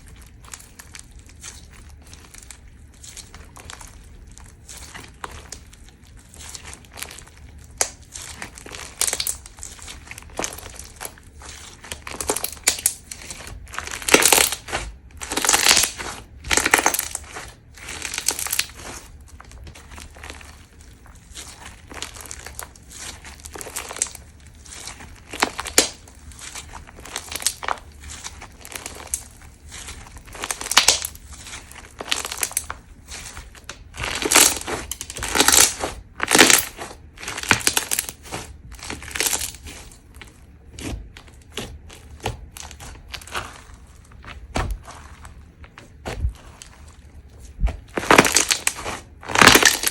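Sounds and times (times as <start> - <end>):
crunchy slime crackling: 0.0 - 49.9.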